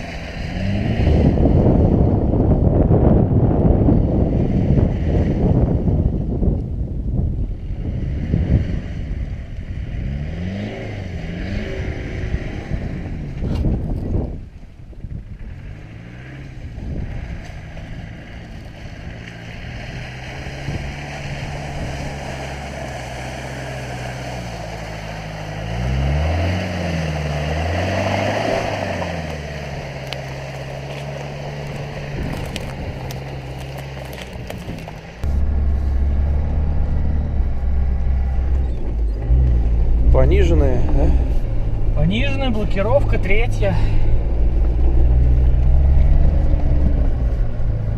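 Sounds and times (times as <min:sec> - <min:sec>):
diesel engine revving: 0:00.0 - 0:05.8, 0:07.6 - 0:14.3, 0:15.2 - 0:47.9.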